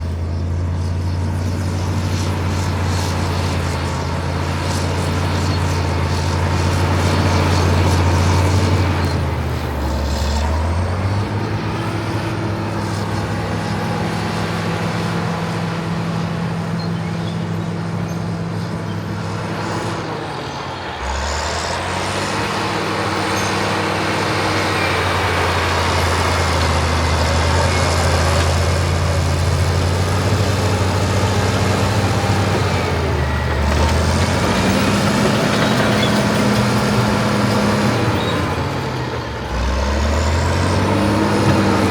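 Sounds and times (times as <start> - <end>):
bulldozer diesel engine running: 0.0 - 41.9.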